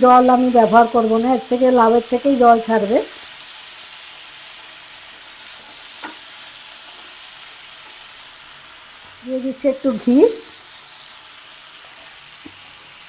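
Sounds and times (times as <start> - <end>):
food sizzling in oil: 0.0 - 13.0
spatula tap: 5.6 - 6.2, 12.4 - 12.6.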